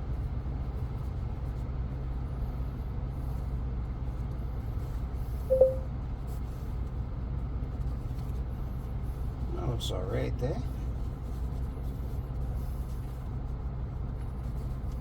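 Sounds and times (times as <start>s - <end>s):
short beep: 5.5s - 5.9s.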